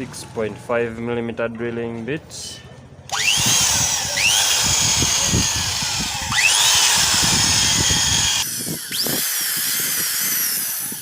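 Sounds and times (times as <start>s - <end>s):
electric drill whining: 3.1s - 11.0s.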